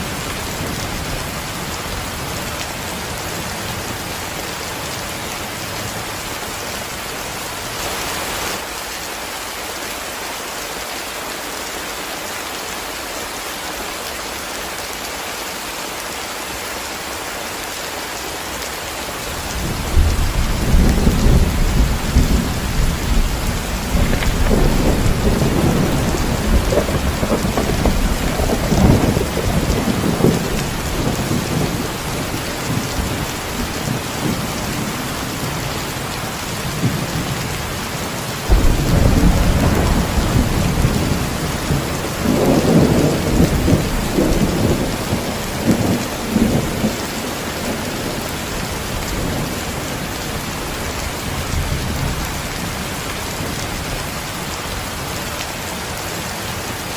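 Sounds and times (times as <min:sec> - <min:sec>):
heavy steady rain: 0:00.0 - 0:56.9
thunder rumbling: 0:19.4 - 0:37.5, 0:38.4 - 0:50.0.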